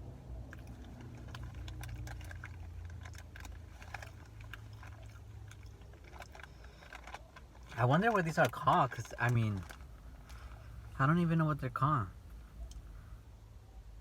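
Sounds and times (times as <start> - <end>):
low steady hum: 0.0 - 14.0
person chewing crunchy chips: 0.4 - 10.5.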